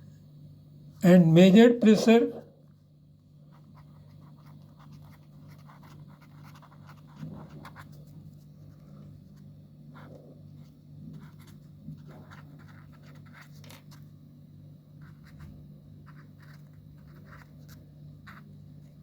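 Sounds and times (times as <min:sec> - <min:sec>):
low electrical hum: 0:00.0 - 0:19.0
pen scratching while writing: 0:03.5 - 0:09.1, 0:09.9 - 0:14.0, 0:15.0 - 0:18.5.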